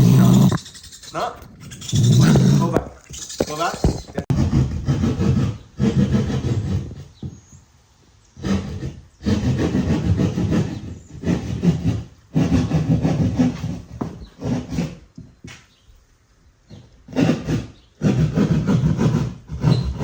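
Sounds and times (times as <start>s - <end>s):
raccoon growling: 0.0s - 7.5s, 8.4s - 14.8s.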